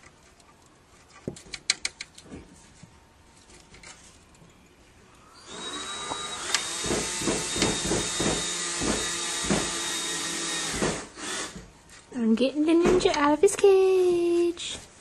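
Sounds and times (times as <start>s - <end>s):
vacuum cleaner running: 5.2s - 11.6s.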